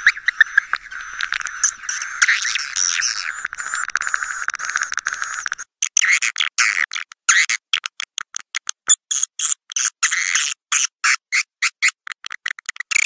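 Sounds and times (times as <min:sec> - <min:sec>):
bird chirps: 0:00.0 - 0:05.6
swiftlets twittering and clicking: 0:00.0 - 0:05.8.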